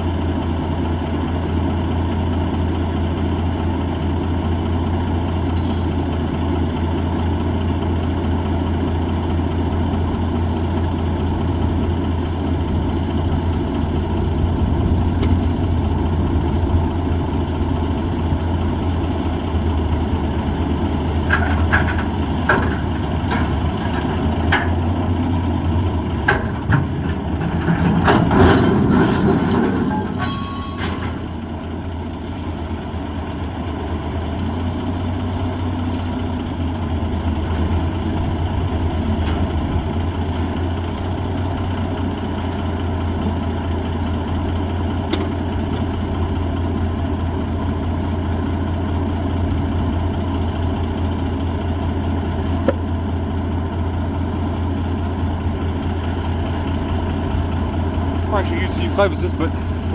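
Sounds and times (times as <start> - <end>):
diesel engine running: 0.0 - 59.9
metallic clanks and knocks: 5.6 - 6.1, 21.2 - 31.5.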